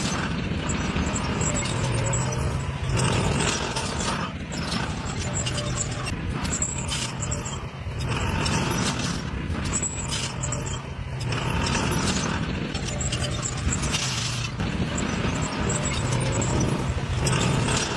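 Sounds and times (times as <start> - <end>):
heavy diesel machinery running: 0.0 - 17.9.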